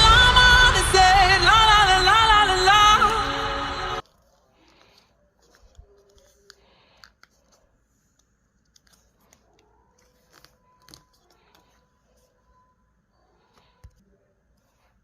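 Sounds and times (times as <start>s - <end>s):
paper being folded and creased: 4.0s - 12.3s.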